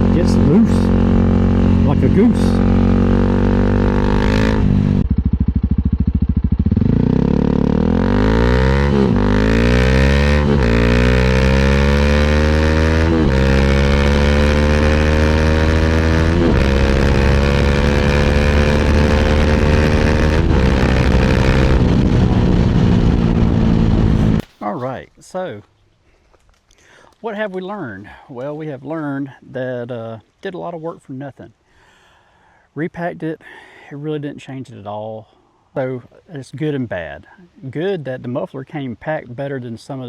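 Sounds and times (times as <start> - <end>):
motorcycle engine revving through gear shifts: 0.0 - 24.4.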